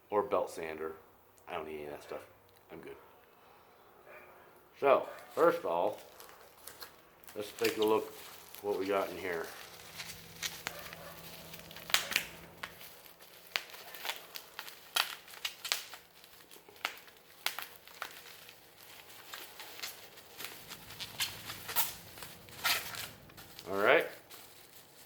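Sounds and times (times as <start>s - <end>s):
packaging crinkling and rustling: 5.2s - 25.0s
sharp crackles and taps: 9.7s - 18.6s.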